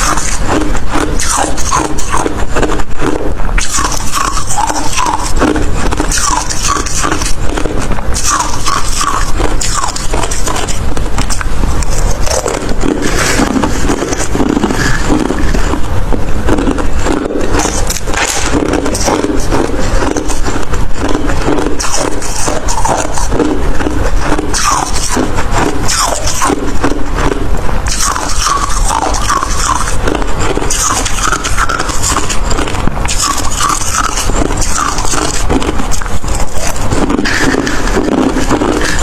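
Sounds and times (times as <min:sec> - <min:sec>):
crushed ice being crunched: 0:27.2 - 0:39.0.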